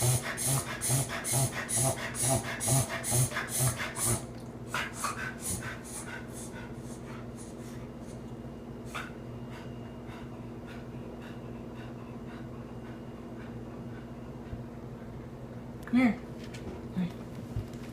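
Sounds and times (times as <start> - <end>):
dog wheezing breaths: 0.0 - 8.2, 8.8 - 15.2
steady low hum: 0.0 - 17.9.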